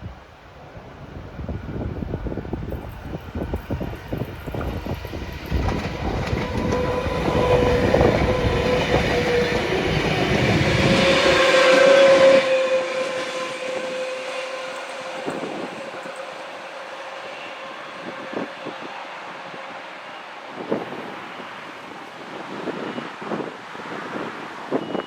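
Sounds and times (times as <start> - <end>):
train passing: 0.0 - 25.0
wind buffeting microphone: 0.0 - 25.0.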